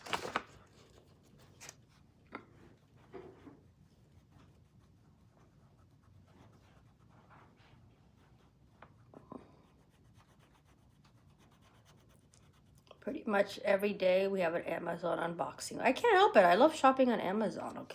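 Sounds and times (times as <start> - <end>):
crayon scratching on paper: 9.6 - 12.8.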